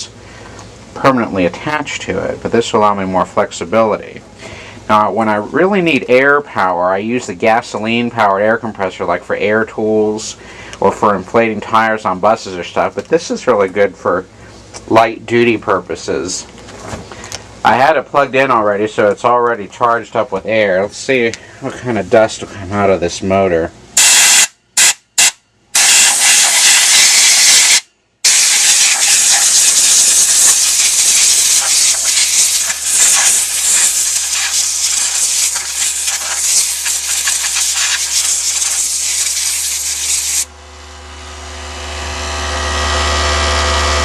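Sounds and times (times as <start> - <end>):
compressed air hissing from nozzle: 24.0 - 40.5
air compressor humming: 24.0 - 44.0.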